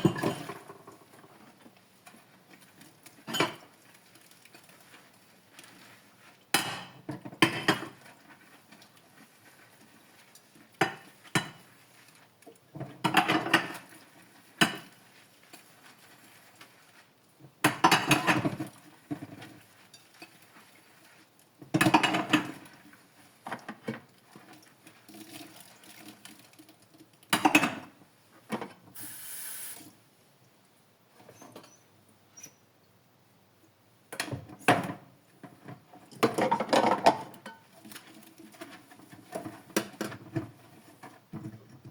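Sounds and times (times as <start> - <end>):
dishes clinking in a sink: 0.0 - 1.0, 3.2 - 3.8, 10.8 - 11.7, 12.8 - 13.9, 17.6 - 20.3, 21.6 - 22.8, 35.6 - 37.8
short hiss: 29.0 - 30.0.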